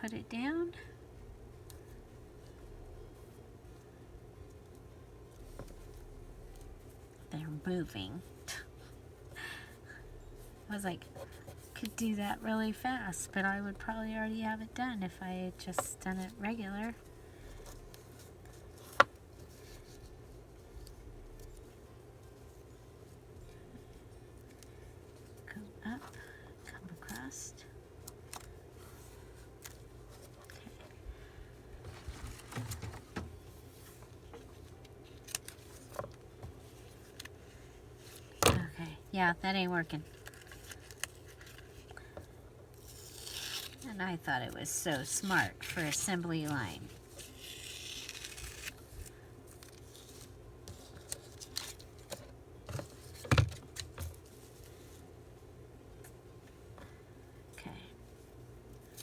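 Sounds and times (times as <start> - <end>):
paper tearing and rustling: 40.0 - 41.9, 42.8 - 43.9, 44.6 - 55.0.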